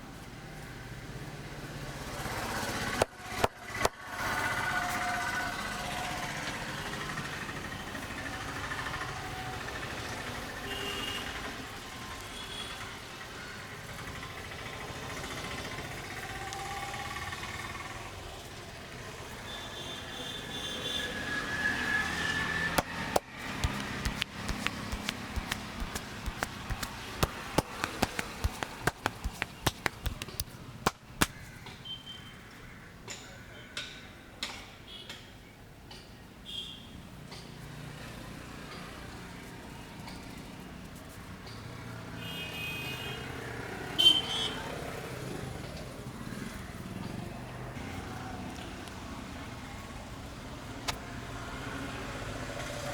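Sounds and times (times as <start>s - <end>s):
street traffic: 0.0s - 52.9s
hands slapping during massage: 22.8s - 31.5s.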